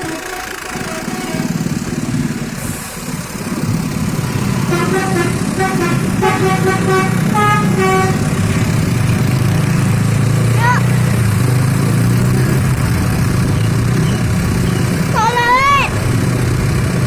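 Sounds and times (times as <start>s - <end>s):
bus musical horn tune: 0.0s - 1.7s, 4.6s - 8.8s
bus engine rumble: 0.0s - 17.0s.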